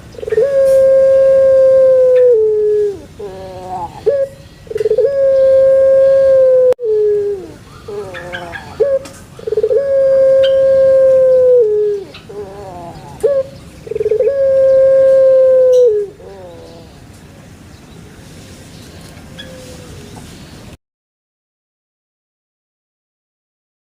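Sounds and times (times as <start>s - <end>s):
animal calling loudly: 7.4s - 17.0s.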